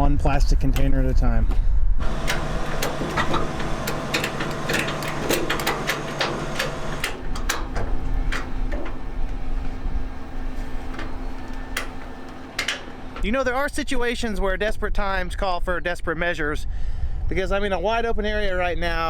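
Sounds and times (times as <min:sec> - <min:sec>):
motor humming: 0:02.0 - 0:13.3
sharp clicks and knocks: 0:02.0 - 0:13.3.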